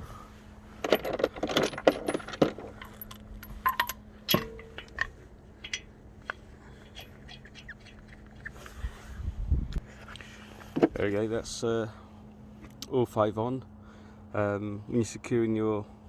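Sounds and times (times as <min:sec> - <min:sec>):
metal wheel nuts clinking: 0:00.7 - 0:08.6.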